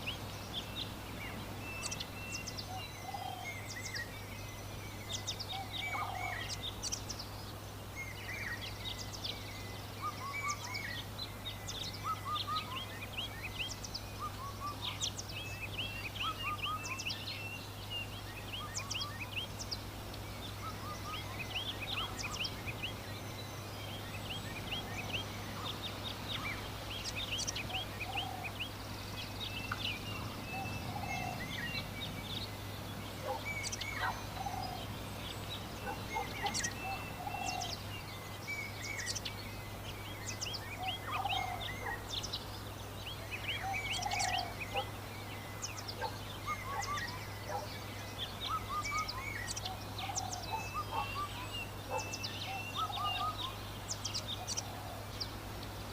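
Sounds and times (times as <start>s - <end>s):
lower bird calls: 0.0s - 55.9s
small birds chirping: 0.0s - 55.9s.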